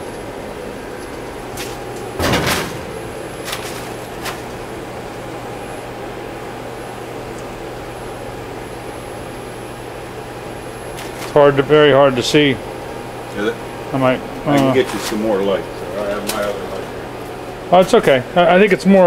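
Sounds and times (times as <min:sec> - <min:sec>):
machine humming: 0:00.0 - 0:19.0
sliding guard door bang: 0:01.6 - 0:04.7.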